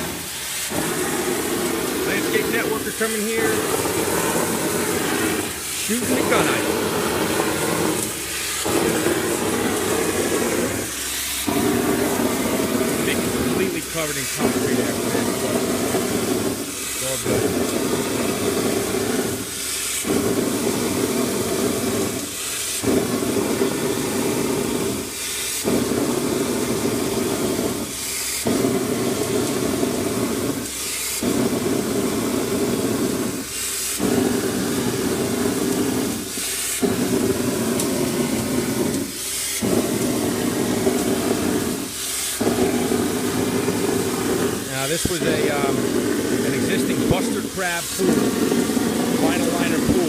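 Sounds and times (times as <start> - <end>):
short sharp hiss: 0.0 - 18.6, 33.4 - 49.6
concrete spraying through hose: 0.0 - 50.0.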